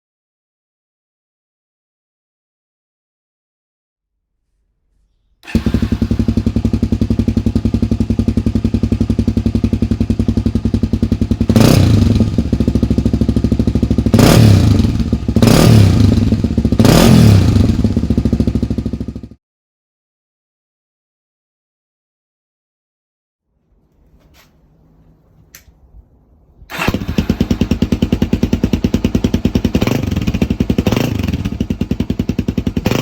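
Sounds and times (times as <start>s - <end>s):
motorcycle engine idling and revving: 5.4s - 19.4s, 26.7s - 33.0s.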